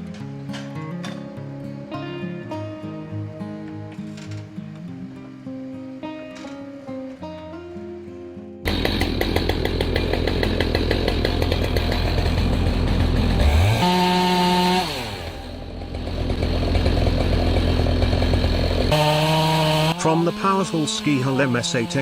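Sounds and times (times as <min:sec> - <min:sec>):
chainsaw running: 0:08.7 - 0:22.0.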